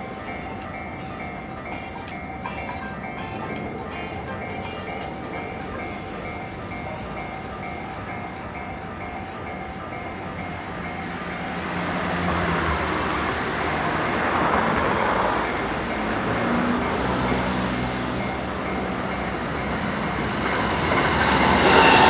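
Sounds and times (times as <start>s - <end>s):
level-crossing warning bell ringing: 0.0s - 22.0s
passing train: 0.0s - 22.0s.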